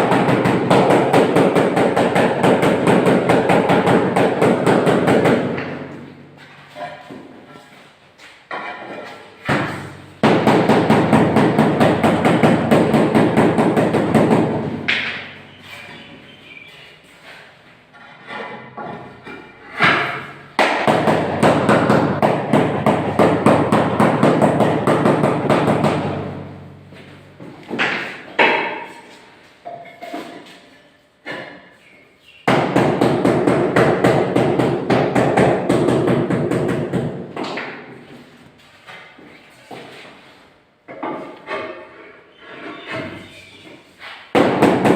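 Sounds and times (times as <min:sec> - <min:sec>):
rapid hammer strikes: 0:00.0 - 0:05.8, 0:09.5 - 0:15.2, 0:20.6 - 0:26.5, 0:44.3 - 0:44.9.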